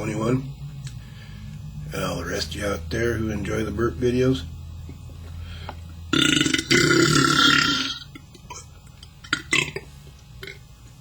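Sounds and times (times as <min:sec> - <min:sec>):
man belching loudly: 0:06.1 - 0:08.7, 0:09.3 - 0:10.6.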